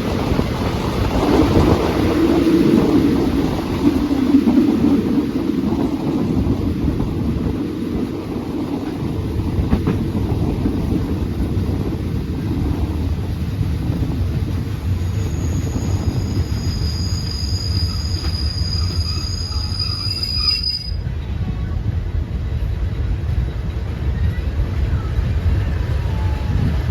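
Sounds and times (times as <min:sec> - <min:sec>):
train wheels rumbling on track: 0:00.0 - 0:26.9
high wheel squeal: 0:15.0 - 0:21.1.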